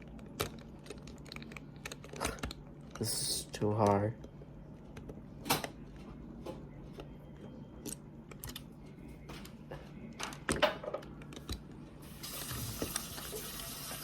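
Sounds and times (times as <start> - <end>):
plastic toy clicking and scraping: 0.1 - 3.2.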